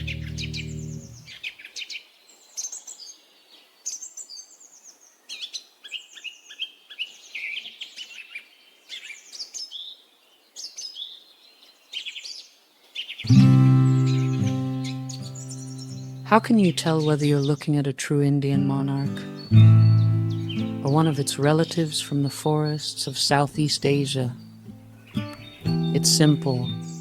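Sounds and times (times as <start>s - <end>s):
held music chord: 0.0s - 1.3s, 13.3s - 16.6s, 18.6s - 27.0s
songbirds chirping and trilling: 0.0s - 27.0s.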